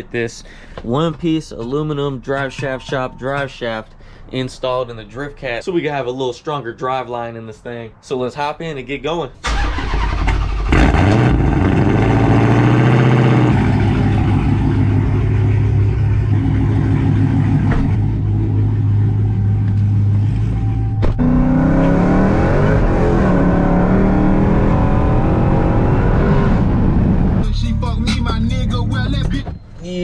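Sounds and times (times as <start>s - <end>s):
car engine revving: 9.5s - 29.3s.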